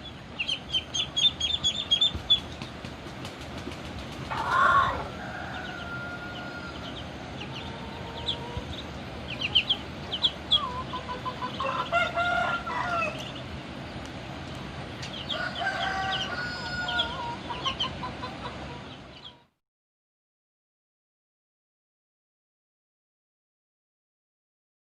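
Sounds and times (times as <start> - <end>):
chicken clucks and chirps: 0.0 - 2.7, 4.2 - 13.5, 15.0 - 19.5
rooster crowing: 4.3 - 7.0, 11.6 - 13.2, 15.2 - 17.5.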